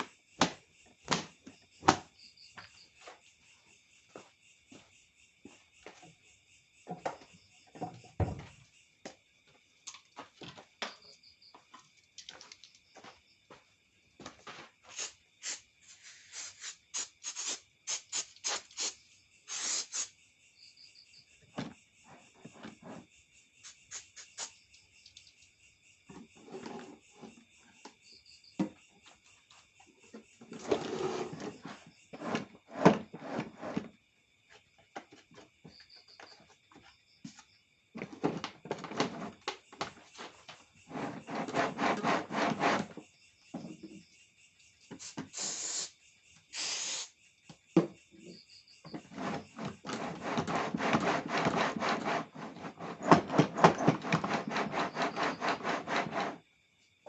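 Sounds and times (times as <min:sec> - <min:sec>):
crickets chirring: 0:00.0 - 0:57.0
short scraping sounds: 0:54.1 - 0:56.4.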